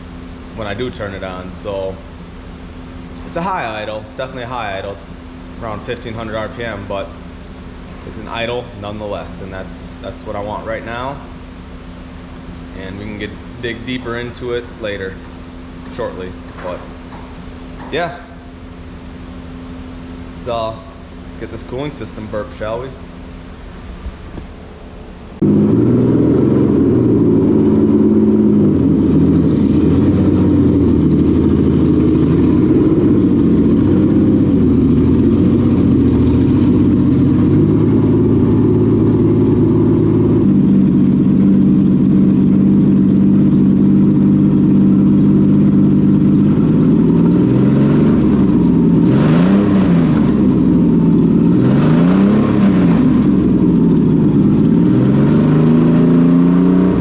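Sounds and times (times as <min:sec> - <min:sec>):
car engine idling and revving: 0:00.0 - 0:57.0.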